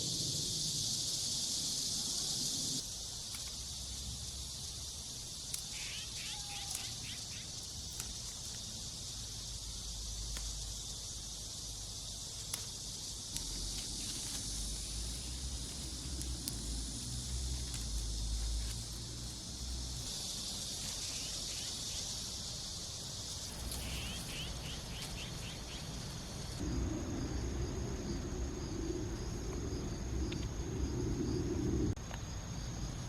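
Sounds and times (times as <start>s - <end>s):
insects chorus: 0.0s - 33.0s
low rumble: 26.6s - 32.0s.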